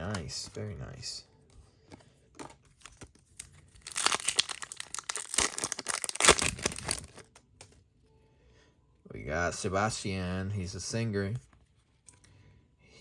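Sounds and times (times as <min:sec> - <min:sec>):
wrapper tearing and crinkling: 0:02.7 - 0:07.7.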